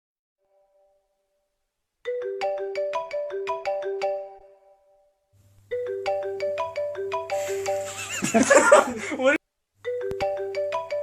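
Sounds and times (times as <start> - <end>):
marimba alarm ringtone: 2.1 - 4.9, 5.7 - 8.3, 9.8 - 11.0.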